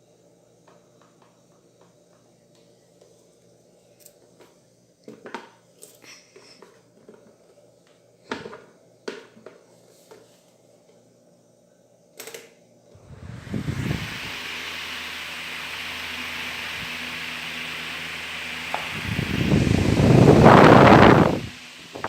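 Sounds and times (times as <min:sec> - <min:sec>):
electric fan spinning up: 0:12.8 - 0:22.0.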